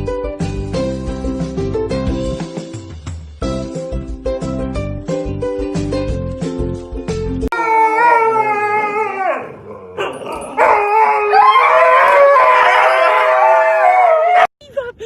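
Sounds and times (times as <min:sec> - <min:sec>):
dog howling: 0:07.5 - 0:14.5.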